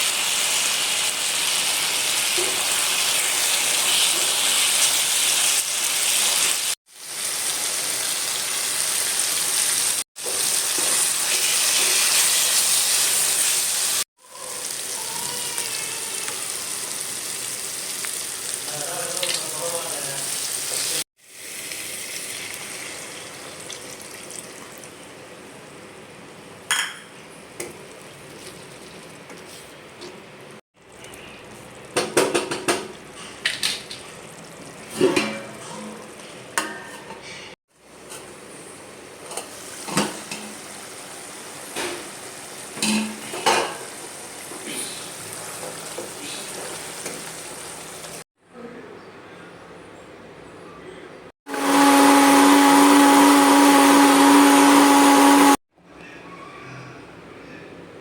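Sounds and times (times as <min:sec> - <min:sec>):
food sizzling in a pan: 0:00.0 - 0:24.8, 0:39.4 - 0:48.2.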